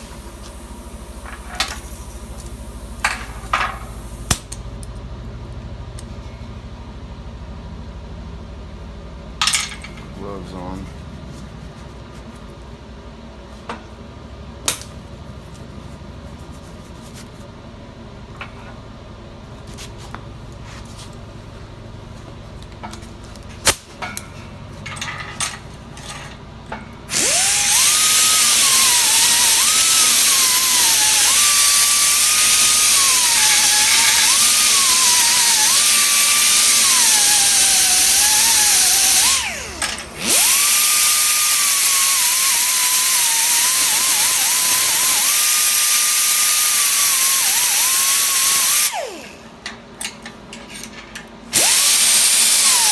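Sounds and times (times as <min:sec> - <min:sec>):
grinder grinding metal: 0:27.1 - 0:49.5, 0:51.5 - 0:52.9.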